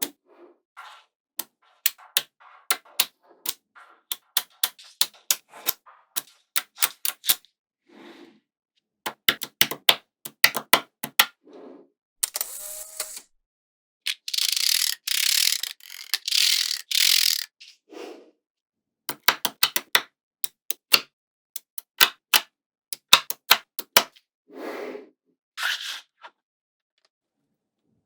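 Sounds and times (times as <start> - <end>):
magnetic balls rattling and scraping: 0.8 - 7.3, 14.1 - 17.6
magnetic balls clicking together: 1.4 - 7.4, 9.1 - 11.3, 14.1 - 17.5, 19.1 - 21.0, 23.0 - 24.0.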